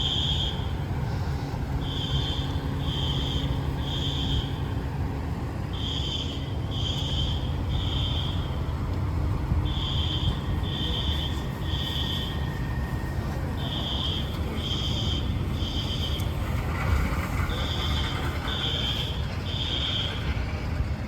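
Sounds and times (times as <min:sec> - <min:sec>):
fire alarm beeps: 0:00.0 - 0:00.7, 0:01.8 - 0:04.7, 0:05.7 - 0:08.7, 0:09.6 - 0:16.4, 0:17.4 - 0:20.3.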